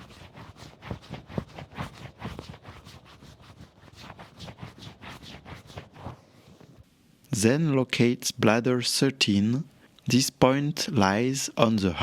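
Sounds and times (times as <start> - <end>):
hand rubbing skin: 0.0 - 6.8.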